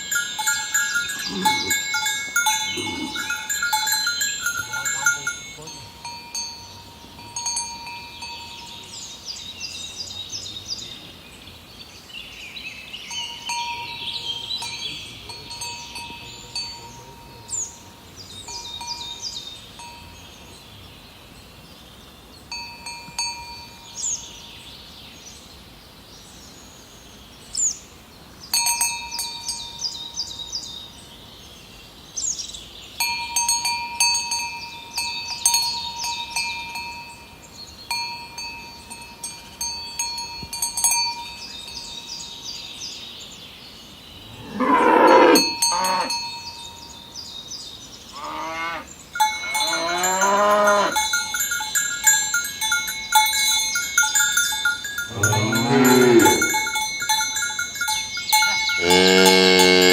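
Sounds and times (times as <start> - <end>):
cowbells clanking: 0.0 - 9.0, 13.1 - 20.2, 28.6 - 30.0, 33.0 - 42.5, 44.4 - 47.2, 49.1 - 59.9
cows mooing: 1.2 - 2.0, 2.6 - 3.5, 44.4 - 46.2, 48.2 - 51.0, 55.1 - 56.7, 58.8 - 59.9.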